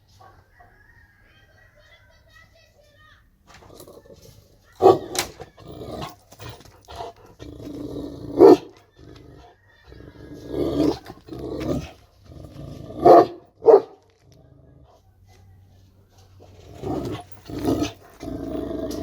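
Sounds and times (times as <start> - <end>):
dog growling: 3.5 - 15.0, 16.4 - 19.0
dog barking: 4.8 - 5.4, 8.3 - 8.8, 13.0 - 14.0.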